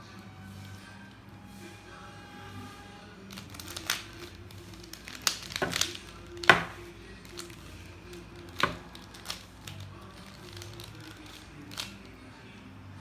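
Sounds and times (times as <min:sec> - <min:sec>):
plastic puzzle cube clicking: 0:08.4 - 0:12.0.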